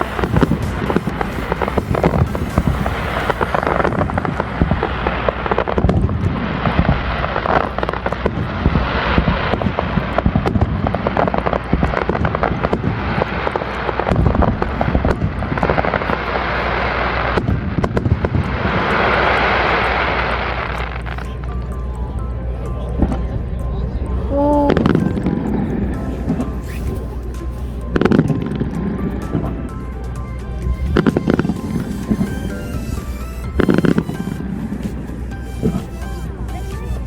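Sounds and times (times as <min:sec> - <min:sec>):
loud rushing noise: 0:00.0 - 0:21.2, 0:24.8 - 0:36.5
fireworks bangs and crackles: 0:00.0 - 0:23.6, 0:24.3 - 0:37.0.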